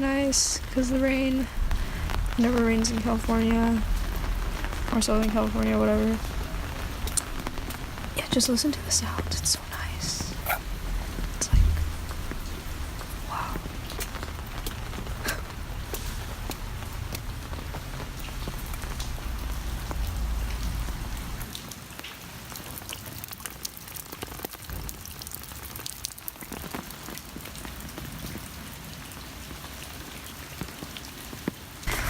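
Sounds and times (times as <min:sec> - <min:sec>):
low rumble: 0:00.0 - 0:21.5
raindrops ticking: 0:00.0 - 0:32.0.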